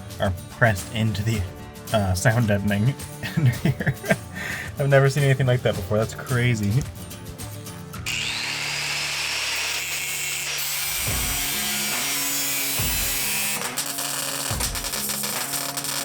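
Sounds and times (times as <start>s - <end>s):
electric drill whining: 8.0s - 16.0s
background music with beat: 12.8s - 16.0s.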